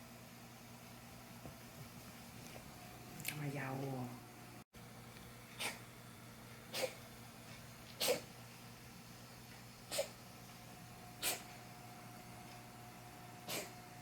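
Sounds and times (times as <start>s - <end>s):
cat coughing: 5.6s - 5.8s, 6.7s - 7.0s, 8.0s - 8.3s, 9.9s - 10.2s, 11.2s - 11.5s, 13.4s - 13.8s.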